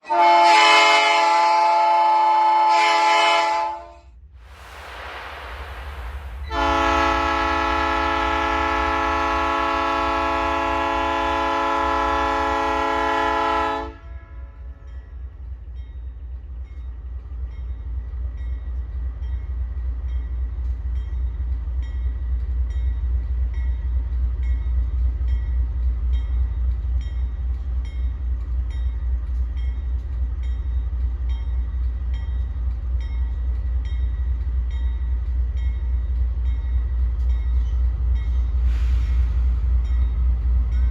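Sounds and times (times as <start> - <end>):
train horn blast: 0.0 - 4.1, 6.4 - 15.0
freight train rumbling: 0.0 - 40.9.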